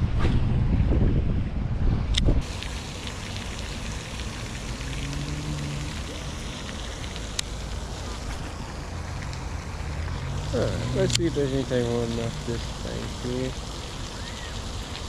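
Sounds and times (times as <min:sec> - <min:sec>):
wind buffeting microphone: 0:00.0 - 0:07.4
outdoor hiss: 0:02.4 - 0:15.0.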